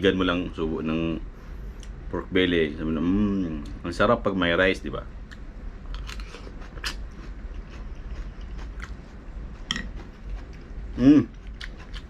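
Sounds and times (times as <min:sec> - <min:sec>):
person chewing food: 0:05.3 - 0:12.0.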